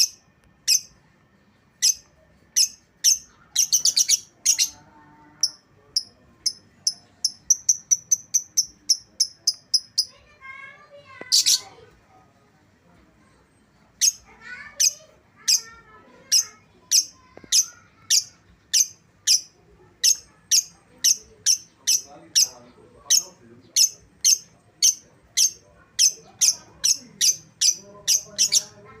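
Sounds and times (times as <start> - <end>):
bird chirping: 0.0 - 4.8, 5.4 - 10.2.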